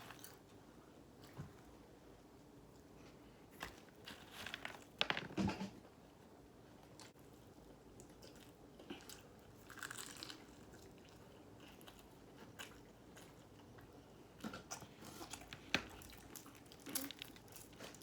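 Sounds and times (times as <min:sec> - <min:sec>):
crunching fried chicken: 0:08.2 - 0:13.9, 0:14.7 - 0:18.0.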